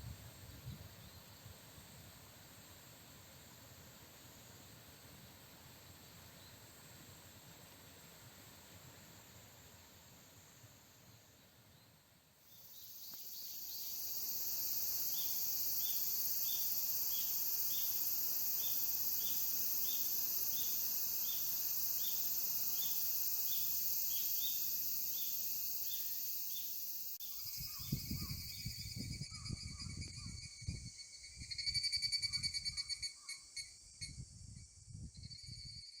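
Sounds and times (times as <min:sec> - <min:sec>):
insects buzzing chorus: 0:12.5 - 0:34.6.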